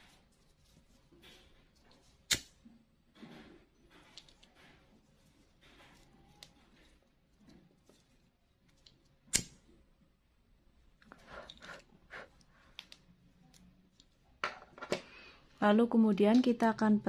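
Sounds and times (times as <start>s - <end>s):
soft rustles: 0.0s - 2.2s
small tool clicks: 2.3s - 2.6s, 8.8s - 9.6s.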